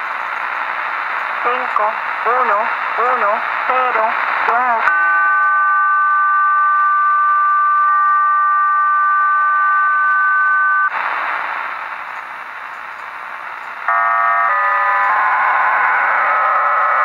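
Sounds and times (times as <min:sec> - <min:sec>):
radio static: 0:00.0 - 0:04.9, 0:07.8 - 0:13.9
steady two-tone radio signal: 0:00.4 - 0:04.9, 0:10.9 - 0:14.0.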